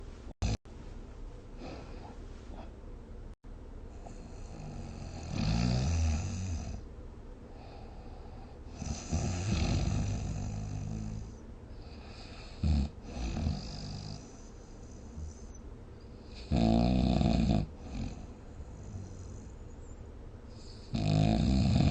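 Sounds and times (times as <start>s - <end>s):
person snoring: 4.0s - 6.8s, 8.7s - 14.5s, 16.3s - 19.5s, 20.8s - 21.9s.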